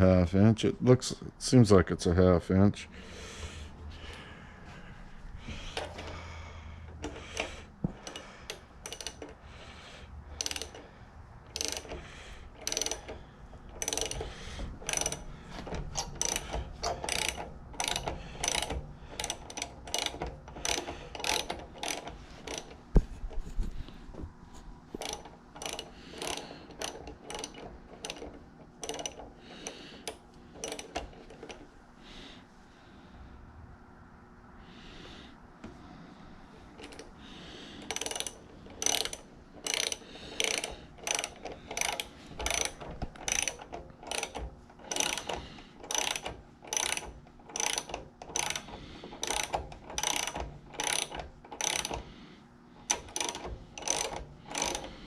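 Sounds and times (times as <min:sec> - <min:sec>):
metallic clicking of hand tool: 0:06.9 - 0:09.4, 0:10.3 - 0:10.9, 0:11.5 - 0:22.8, 0:25.0 - 0:31.6, 0:37.8 - 0:52.1, 0:52.8 - 0:55.0.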